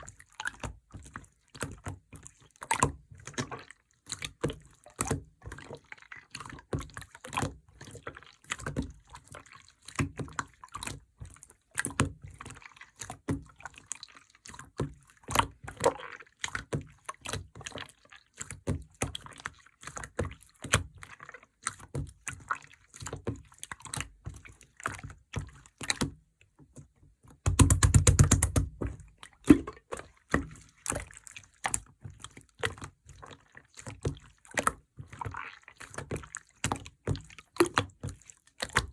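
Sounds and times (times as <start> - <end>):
wet clicks and bubble pops: 27.4 - 31.1.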